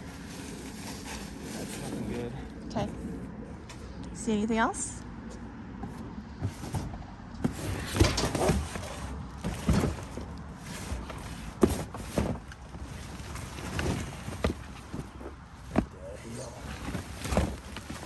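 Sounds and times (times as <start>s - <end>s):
trash rustling: 0.0s - 4.0s, 5.2s - 18.0s
knocks and clatters in dumpster: 5.8s - 18.0s.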